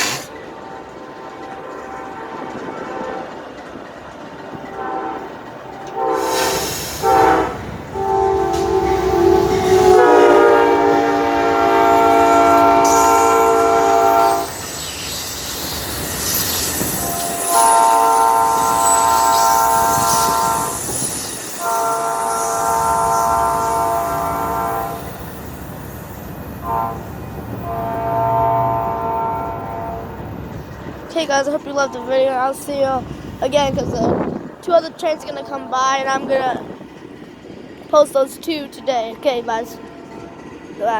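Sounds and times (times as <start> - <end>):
train clattering on rails: 0.0 - 40.9
train air horn blasts: 4.7 - 14.5, 16.9 - 20.9, 21.6 - 25.2, 26.6 - 30.2.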